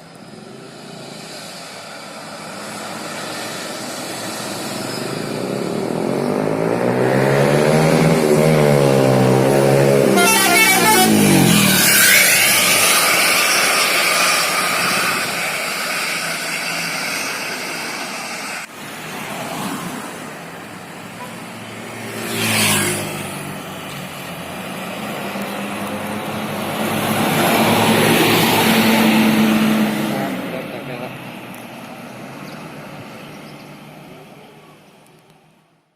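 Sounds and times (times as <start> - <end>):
large vehicle passing: 0.4 - 34.2
whoosh of passing vehicle: 21.9 - 30.8.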